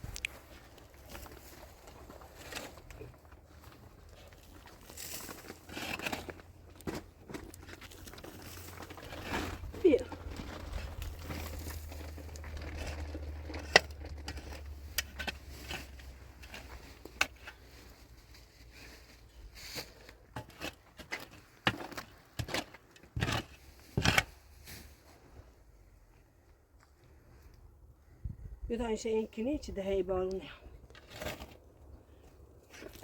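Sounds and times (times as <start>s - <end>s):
crinkling: 0.0s - 25.2s.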